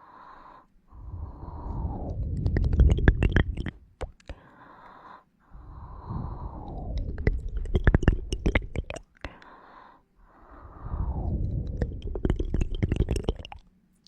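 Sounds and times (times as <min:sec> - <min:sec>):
breathy mouth rush: 0:00.0 - 0:13.6
sharp mouth clicks: 0:01.6 - 0:04.4, 0:06.5 - 0:09.5, 0:11.2 - 0:13.7.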